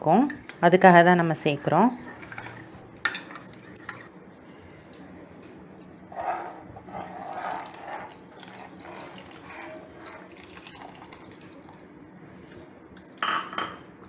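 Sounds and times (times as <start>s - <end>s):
steady liquid sound: 6.1s - 13.2s
liquid pouring and splashing: 7.0s - 11.9s.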